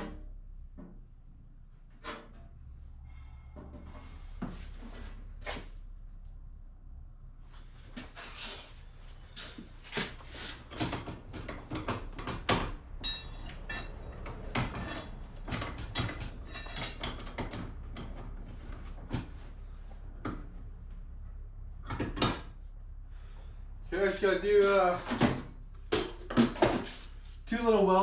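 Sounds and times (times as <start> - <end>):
low steady hum: 0.0 - 28.0
metal parts clanking: 10.6 - 18.2.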